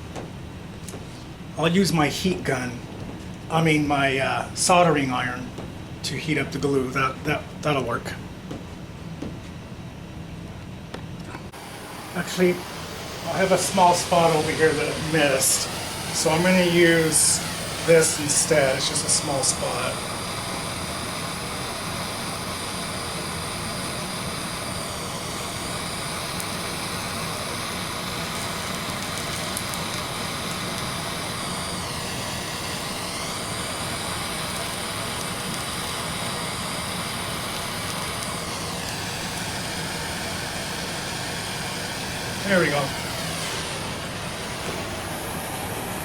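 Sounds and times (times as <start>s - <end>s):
motor whining: 11.3s - 46.0s.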